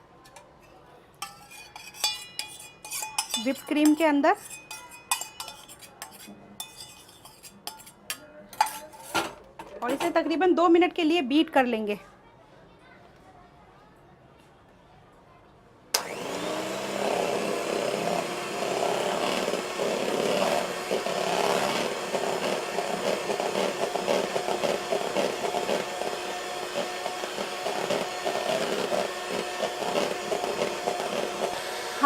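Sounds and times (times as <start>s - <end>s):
electric beater motor rattling: 16.0s - 32.0s.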